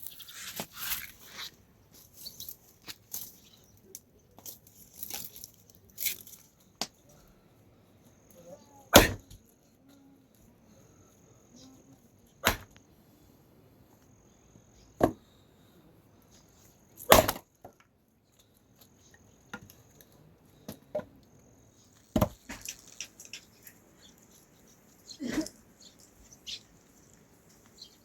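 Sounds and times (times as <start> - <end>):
thin high chirping: 0.0 - 3.9, 21.8 - 28.0.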